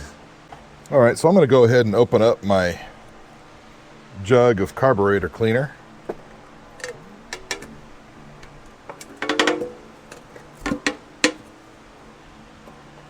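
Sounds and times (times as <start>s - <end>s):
lid rattle: 6.8s - 7.8s, 8.4s - 11.5s.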